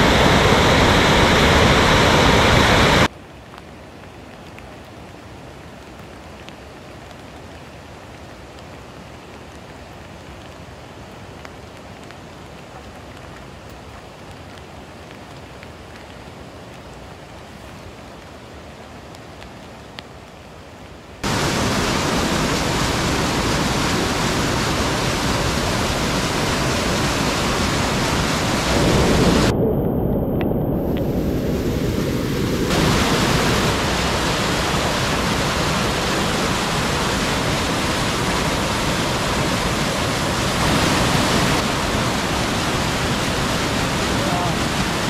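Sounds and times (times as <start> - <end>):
loud rushing noise: 0.0 - 3.1, 21.2 - 45.0.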